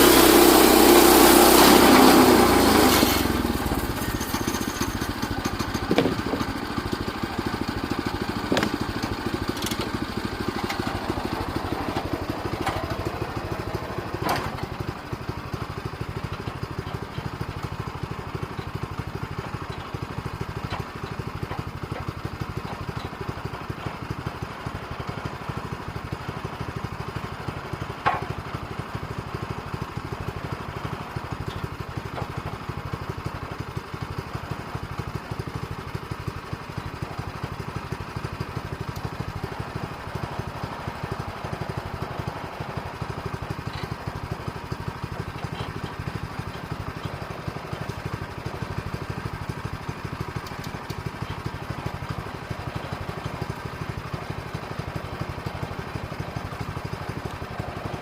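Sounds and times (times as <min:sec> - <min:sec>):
small engine idling: 0:00.0 - 0:58.0
sharp knocks: 0:05.4 - 0:06.6, 0:08.5 - 0:09.0.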